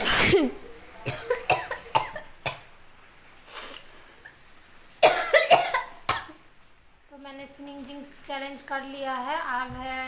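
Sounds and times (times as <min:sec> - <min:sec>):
woman coughing: 0:00.0 - 0:02.6, 0:05.0 - 0:06.4.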